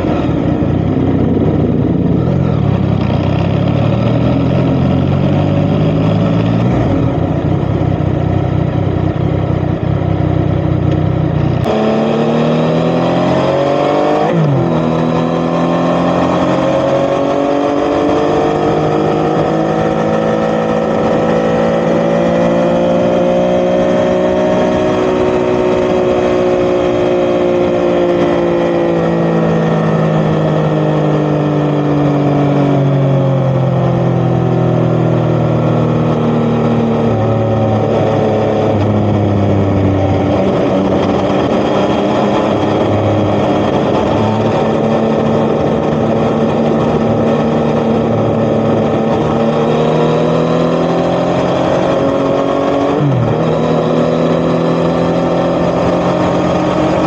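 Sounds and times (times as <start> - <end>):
heavy low rumble: 0.0 - 11.7, 36.4 - 49.6
motorcycle engine while riding: 0.0 - 57.0.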